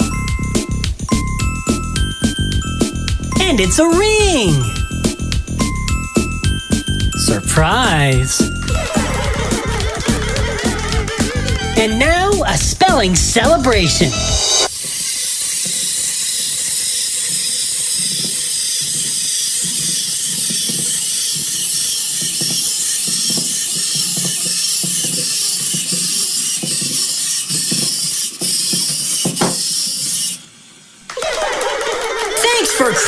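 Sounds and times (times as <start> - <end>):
loud steady hiss: 6.8 - 31.2.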